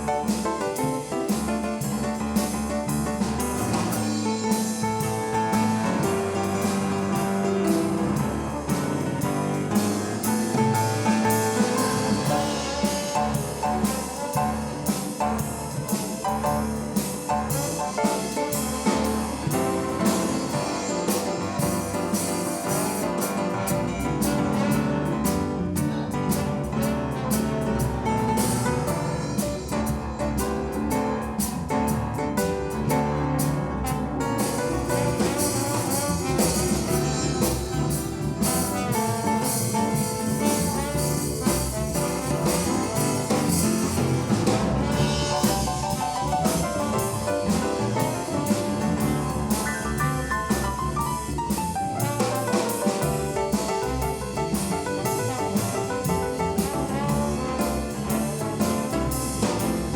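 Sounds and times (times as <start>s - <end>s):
drum kit beat: 0.0s - 59.9s
jazz piano: 0.0s - 59.9s.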